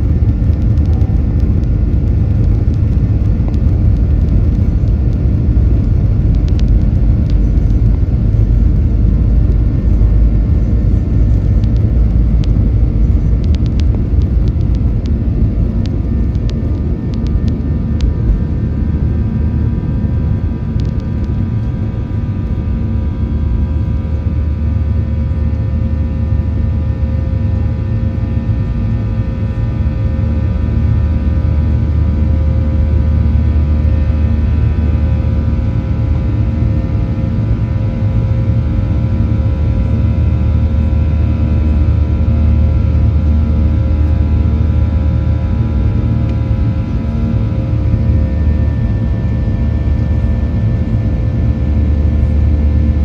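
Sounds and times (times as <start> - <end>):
airplane cabin rumble: 0.0 - 53.0
faint clicks: 13.2 - 18.2.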